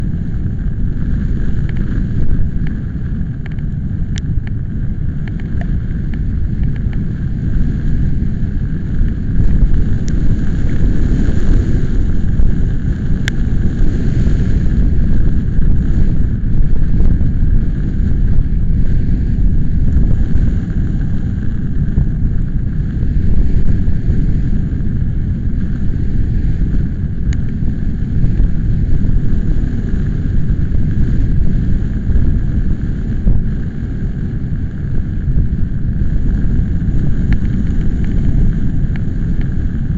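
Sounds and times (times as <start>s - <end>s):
wind buffeting microphone: 0.0s - 39.9s
sharp ticks: 3.4s - 4.6s, 5.2s - 7.0s, 37.2s - 39.5s.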